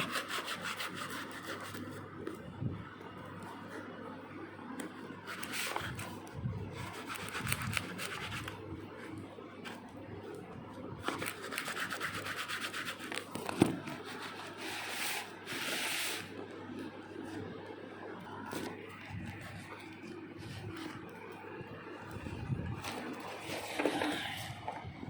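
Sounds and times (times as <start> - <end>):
knife scraping parcel packaging: 6.8 - 8.6.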